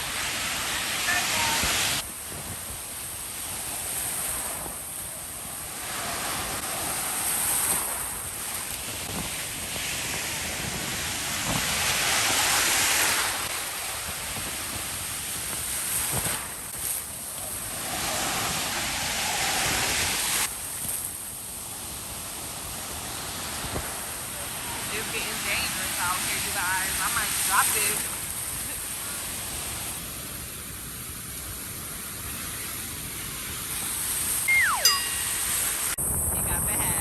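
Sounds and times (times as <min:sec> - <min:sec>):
ocean waves washing onto beach: 0:00.0 - 0:37.0
wind buffeting microphone: 0:35.5 - 0:37.0.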